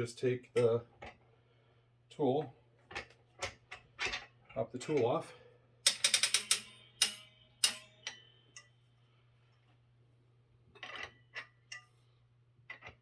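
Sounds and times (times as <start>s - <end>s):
metal tool clinking: 5.9s - 7.9s.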